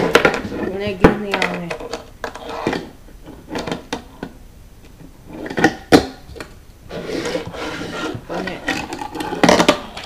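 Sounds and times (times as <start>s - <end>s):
hard objects knocking and clacking: 0.0s - 2.9s.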